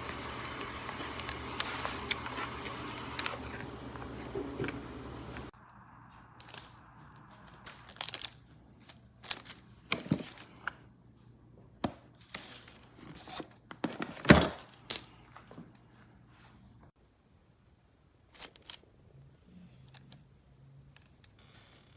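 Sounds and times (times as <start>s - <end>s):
handling clicks and rustles: 0.0s - 5.5s.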